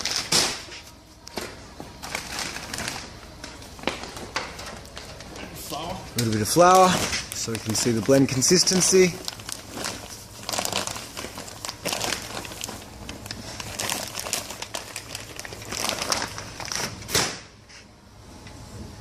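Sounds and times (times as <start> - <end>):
bag rustling and crinkling: 2.0 - 17.1.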